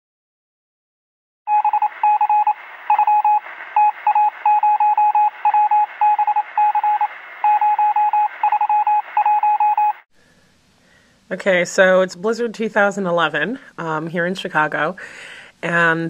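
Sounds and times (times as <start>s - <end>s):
electronic beeping tone: 1.5s - 10.0s.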